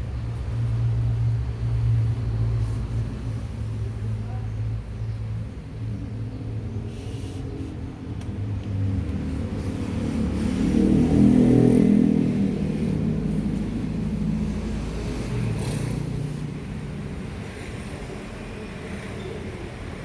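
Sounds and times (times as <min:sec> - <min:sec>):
vehicle engine and road rumble: 0:00.0 - 0:20.0.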